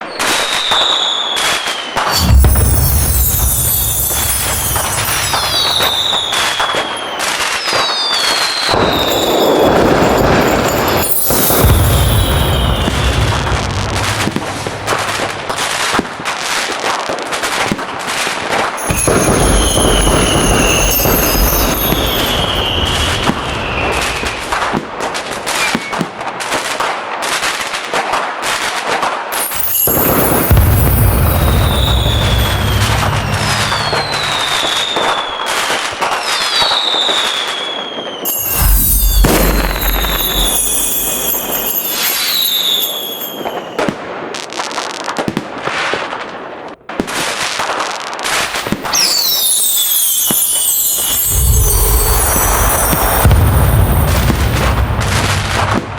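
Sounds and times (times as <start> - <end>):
whistling rocket: 0.0 - 16.2, 18.6 - 26.1, 29.3 - 44.1, 48.3 - 55.9
fireworks crackling: 0.0 - 55.9
deep firework boom: 2.0 - 6.9, 8.7 - 16.2, 18.8 - 25.2, 29.6 - 35.2, 38.3 - 42.5, 51.0 - 55.9.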